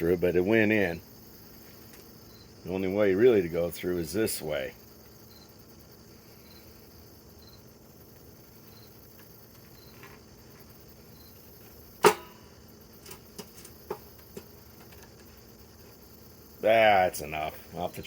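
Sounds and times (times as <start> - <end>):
sharp knock: 12.0 - 12.5.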